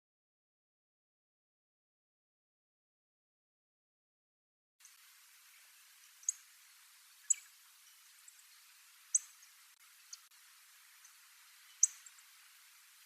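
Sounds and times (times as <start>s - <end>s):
bird giving sharp high calls: 11.6s - 12.2s.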